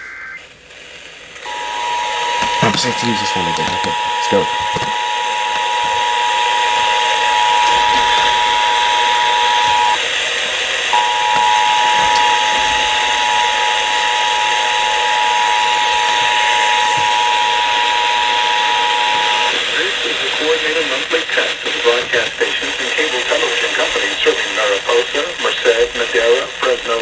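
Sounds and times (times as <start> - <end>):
static hiss: 0.0 - 27.0
two-tone alert signal: 11.0 - 19.5.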